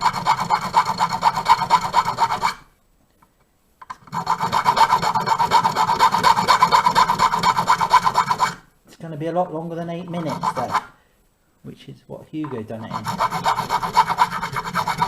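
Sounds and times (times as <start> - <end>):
hand file cutting a key: 12.9 - 15.0.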